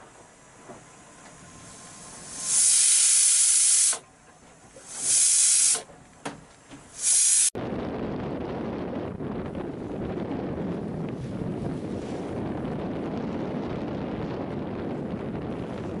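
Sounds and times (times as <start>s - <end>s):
steam hissing from a pot: 1.8s - 4.0s, 4.9s - 5.8s, 7.0s - 7.5s
wind and water rushing: 6.7s - 16.0s.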